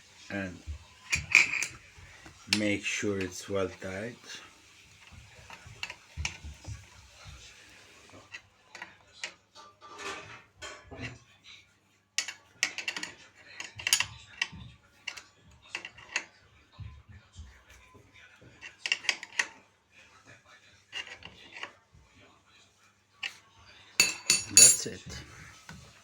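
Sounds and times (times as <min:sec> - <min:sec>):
hand tool metal clicks and clinks: 0:24.0 - 0:25.0.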